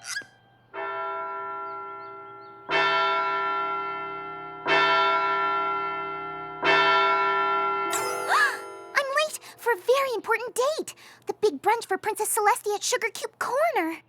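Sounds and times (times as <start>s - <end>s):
large bell tolling: 0.8s - 9.6s.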